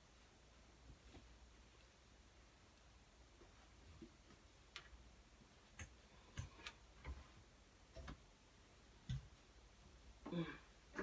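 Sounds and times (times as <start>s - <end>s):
faint clicks and knocks: 3.4s - 8.4s.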